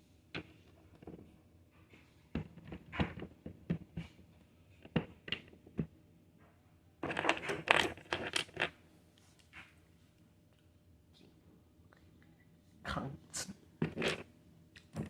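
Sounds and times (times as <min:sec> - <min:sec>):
plastic pieces clicking and clattering: 0:07.0 - 0:08.7.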